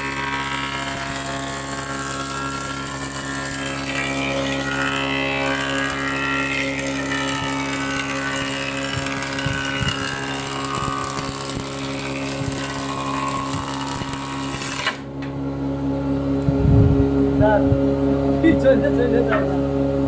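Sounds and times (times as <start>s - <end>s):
woodworking machine humming and whining: 0.0s - 20.0s.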